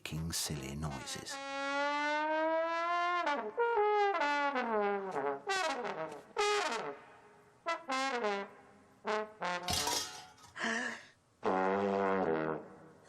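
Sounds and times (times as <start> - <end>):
trombone sliding notes: 11.4 - 12.9.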